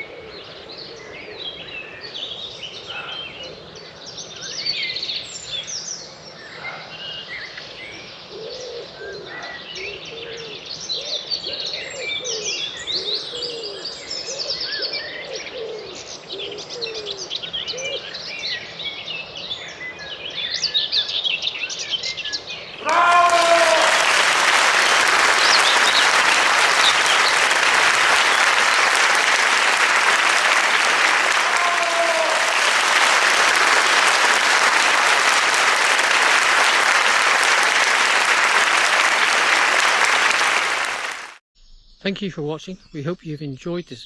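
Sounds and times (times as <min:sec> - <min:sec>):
crowd applauding: 0:22.8 - 0:41.4
whooping cheers: 0:22.8 - 0:41.4.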